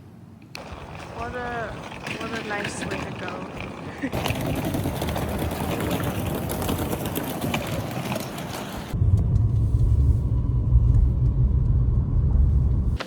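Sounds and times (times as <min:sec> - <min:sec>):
loud low rumble: 0:09.0 - 0:13.0.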